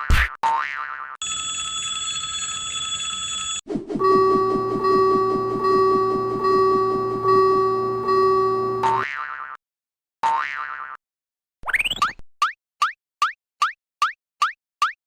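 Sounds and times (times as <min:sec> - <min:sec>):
rapid ringing alarm: 0:01.2 - 0:09.0
steady electronic tone: 0:03.9 - 0:09.0.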